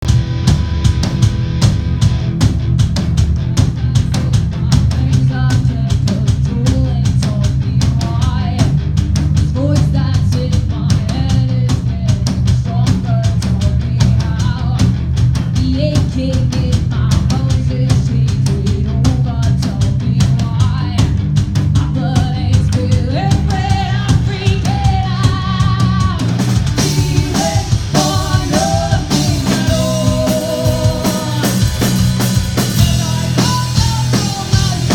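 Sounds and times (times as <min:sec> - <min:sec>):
rock band playing live: 0:00.0 - 0:34.9.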